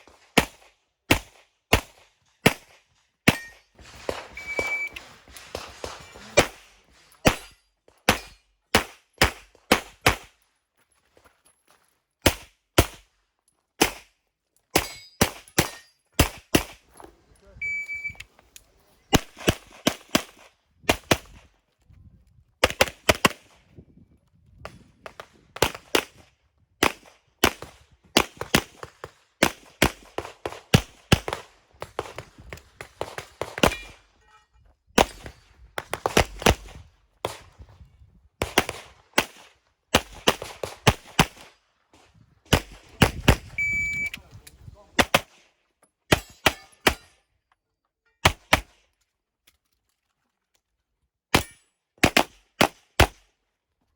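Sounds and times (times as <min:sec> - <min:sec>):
shot timer beep: 0:04.4 - 0:05.0, 0:17.6 - 0:18.2, 0:43.6 - 0:44.2.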